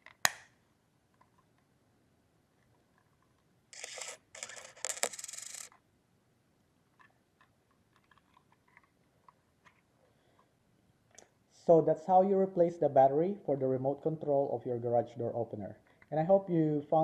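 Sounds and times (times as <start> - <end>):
sharp plastic click: 0.0 - 0.5.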